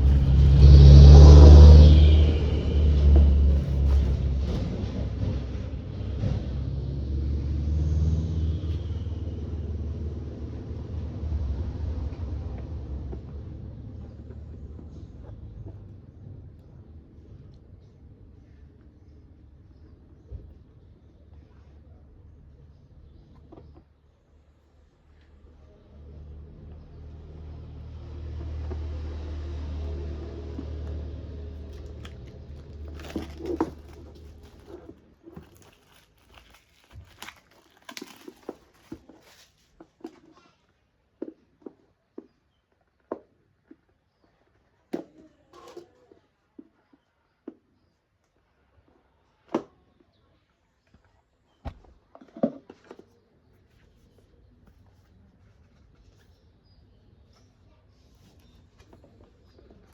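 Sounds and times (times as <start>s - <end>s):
passing vehicle rumble: 0.0s - 17.3s, 25.4s - 39.0s.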